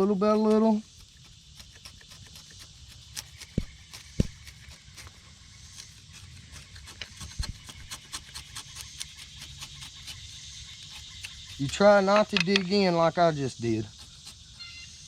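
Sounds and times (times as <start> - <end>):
bark being scraped off: 0.3 - 12.9, 13.6 - 14.8
soft thumps: 3.5 - 4.4.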